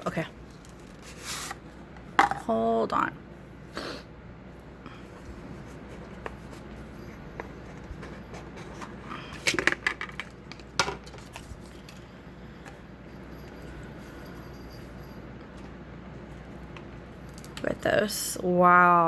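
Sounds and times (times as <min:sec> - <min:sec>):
small clicks and handling noises: 0:15.5 - 0:17.8.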